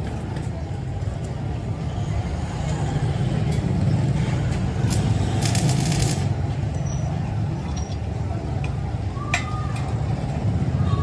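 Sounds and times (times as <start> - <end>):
machine humming: 4.8 - 6.3
rapid clicking and rattling: 4.8 - 6.3.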